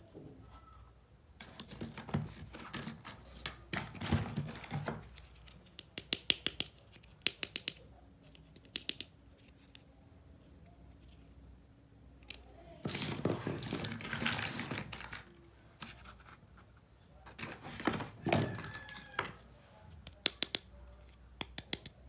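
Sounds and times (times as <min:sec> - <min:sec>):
rustling and crinkling: 0:00.4 - 0:05.8, 0:12.8 - 0:20.0.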